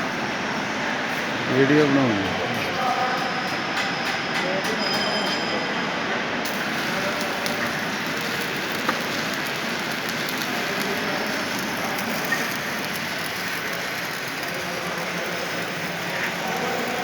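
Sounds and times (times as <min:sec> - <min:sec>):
arc welding crackling hiss: 0:06.4 - 0:17.0.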